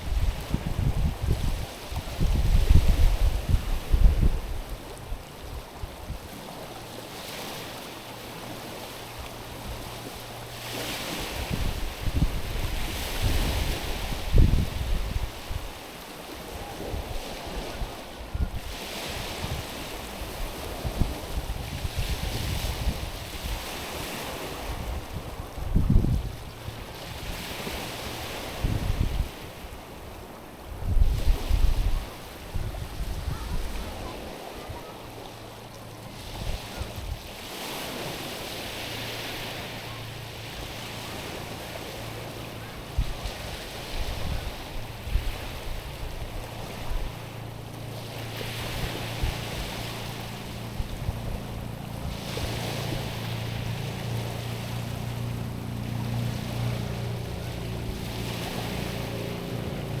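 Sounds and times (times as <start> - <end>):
wind buffeting microphone: 0.0 - 6.6, 9.4 - 35.2, 36.2 - 60.0
small waves on a stony shore: 0.0 - 60.0
low engine hum: 37.9 - 60.0.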